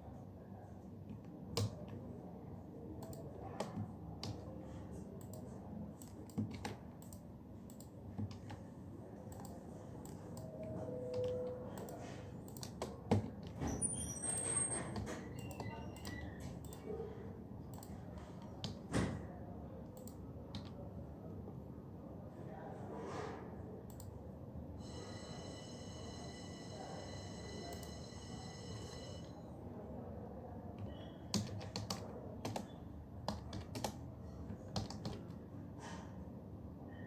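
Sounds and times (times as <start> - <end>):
low room hum: 0.0 - 37.0
computer keyboard key clicks: 1.2 - 2.0, 6.0 - 8.6, 11.2 - 13.5, 20.0 - 20.8, 30.8 - 34.0, 34.6 - 35.4.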